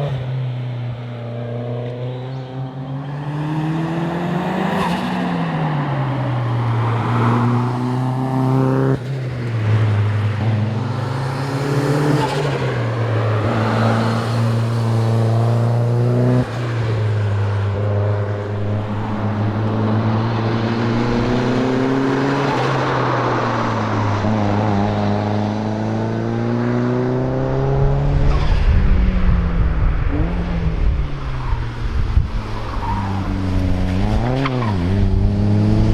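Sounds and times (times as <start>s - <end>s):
car engine revving hard: 18.1s - 31.1s, 33.3s - 35.9s.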